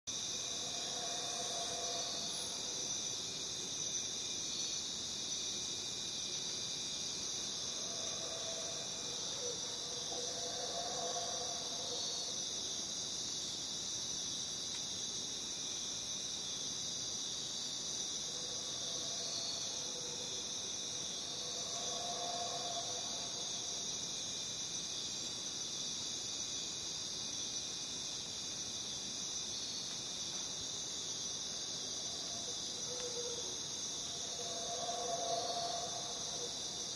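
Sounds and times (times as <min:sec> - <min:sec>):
crickets trilling: 0:00.1 - 0:36.9
faint low animal calls: 0:34.2 - 0:36.6.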